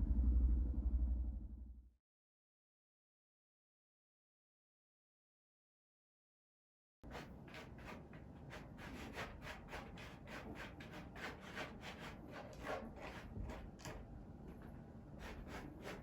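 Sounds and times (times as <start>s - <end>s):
cat claws raking cardboard: 7.1s - 14.6s, 15.2s - 16.0s.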